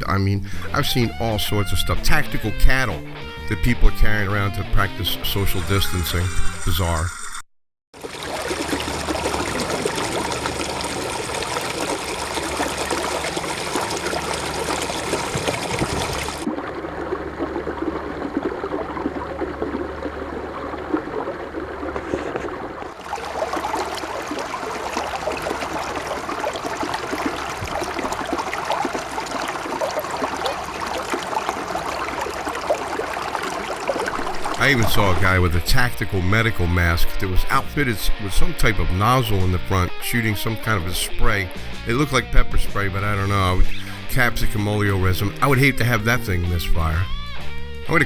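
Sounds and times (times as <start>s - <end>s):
river water rushing: 8.0s - 35.6s.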